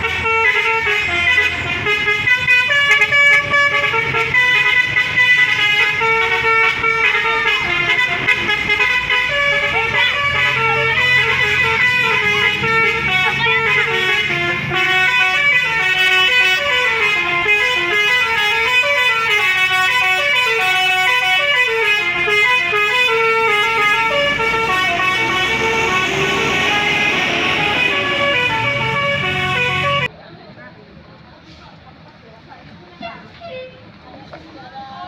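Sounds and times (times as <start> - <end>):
musical bus horn melody: 0.0 - 30.1.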